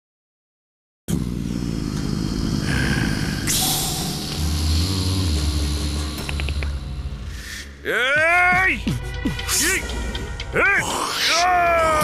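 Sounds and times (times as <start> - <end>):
vehicle engine rough rumble: 1.1 - 7.7.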